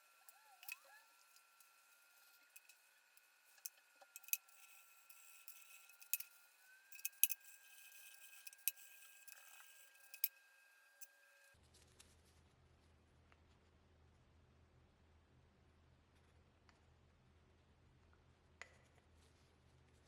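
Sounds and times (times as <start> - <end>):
faint high whine: 0.0 - 11.6
small parts clicking and clinking: 0.2 - 2.8, 3.4 - 10.4.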